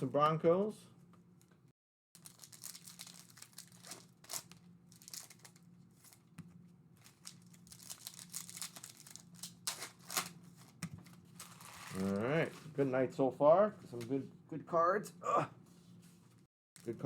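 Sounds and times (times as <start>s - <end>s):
plastic packaging crinkling and tearing: 2.2s - 6.3s, 7.0s - 10.8s, 11.4s - 12.5s, 16.8s - 17.0s.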